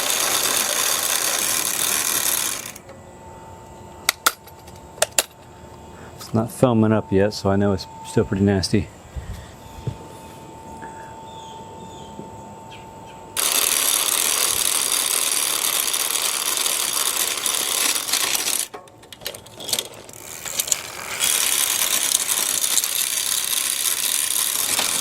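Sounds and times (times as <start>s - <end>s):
bike chain and gears clattering: 0.0s - 2.8s, 13.4s - 25.0s.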